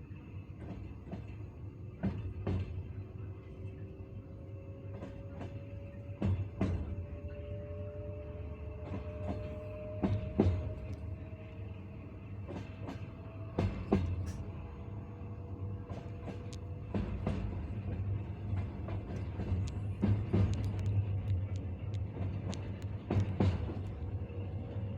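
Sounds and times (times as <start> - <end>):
moving train rumble: 0.0 - 24.9
train wheels clacking over rail joints: 15.8 - 24.2.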